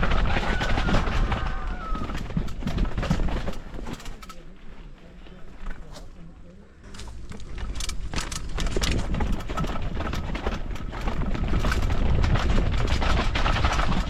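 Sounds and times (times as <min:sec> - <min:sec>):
motorcycle engine rumble: 0:00.0 - 0:14.0
small clattering knocks: 0:06.9 - 0:14.0.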